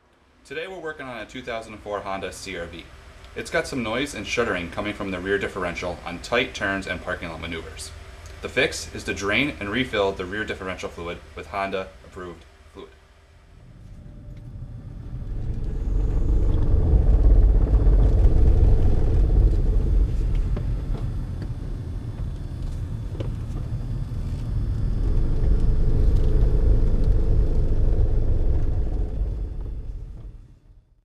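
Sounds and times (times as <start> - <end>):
low rumbling groan from car differential: 13.5 - 31.0.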